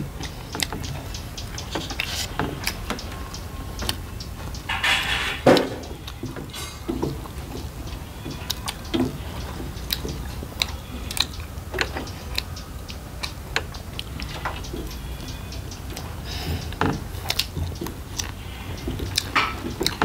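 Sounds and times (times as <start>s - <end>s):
person chewing crunchy food: 8.4s - 14.4s, 16.7s - 20.0s.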